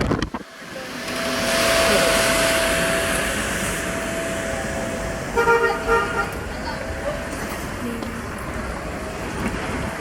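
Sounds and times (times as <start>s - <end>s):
road traffic noise: 0.0s - 10.0s
car horn: 5.2s - 6.5s.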